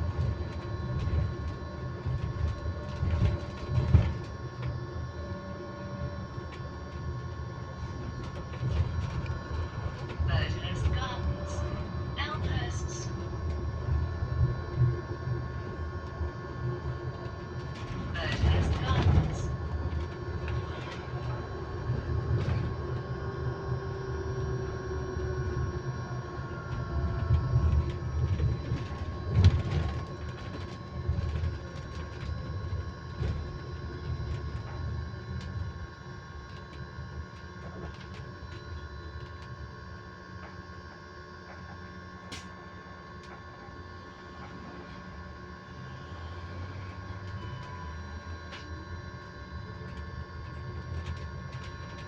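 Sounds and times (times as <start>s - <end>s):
bus rumble: 0.0s - 39.6s
electric bus whine: 0.0s - 52.0s.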